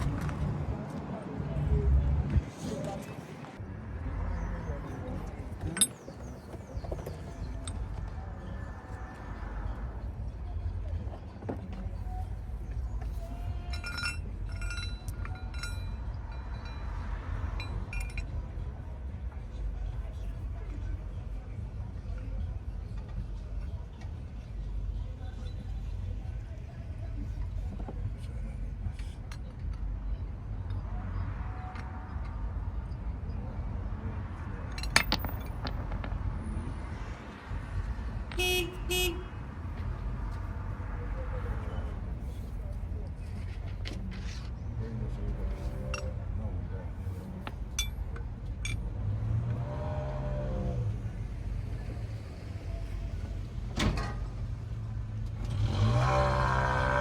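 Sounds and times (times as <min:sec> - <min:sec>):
metal tools clinking: 0:05.5 - 0:07.9, 0:13.6 - 0:16.9, 0:34.7 - 0:36.0, 0:47.1 - 0:48.8.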